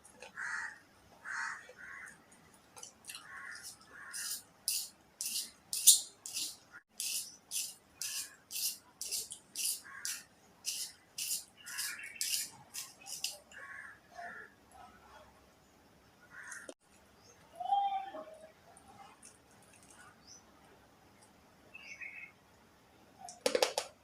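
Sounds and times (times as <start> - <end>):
slate pencil crunching: 2.8 - 13.4.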